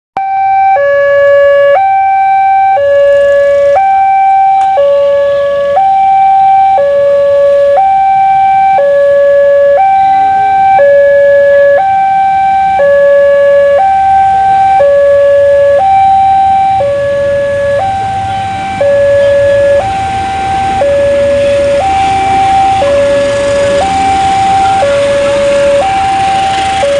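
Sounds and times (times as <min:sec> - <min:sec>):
two-tone hi-lo siren: 0:00.2 - 0:26.9.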